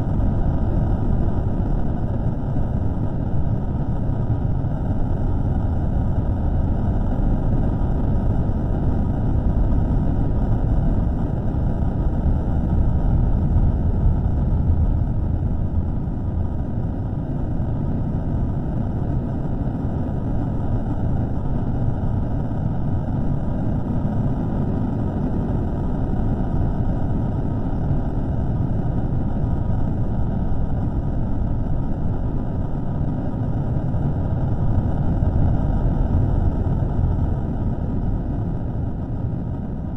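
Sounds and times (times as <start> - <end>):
low rumbling noise: 0.0 - 39.9.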